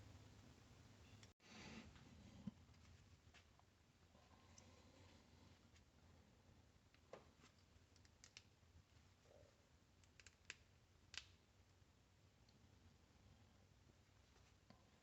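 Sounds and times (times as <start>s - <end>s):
faint clicks and ticks: 6.9s - 8.6s, 10.0s - 11.4s.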